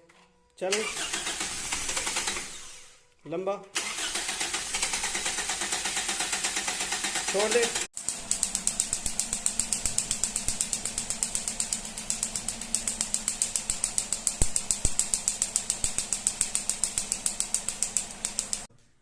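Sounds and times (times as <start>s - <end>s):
car engine idling with ticking: 4.6s - 18.7s.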